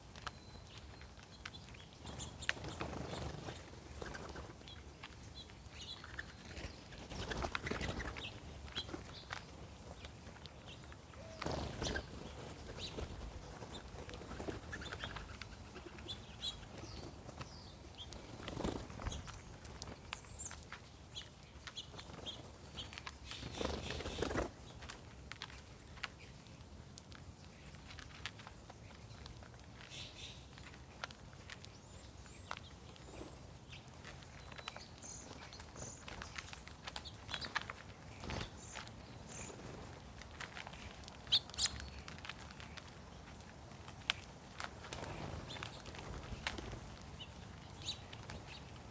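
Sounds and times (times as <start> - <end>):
small birds chirping: 0.0 - 48.9
bird wings flapping: 6.1 - 9.5, 11.3 - 16.0, 18.2 - 20.0, 23.3 - 25.0, 44.1 - 47.1.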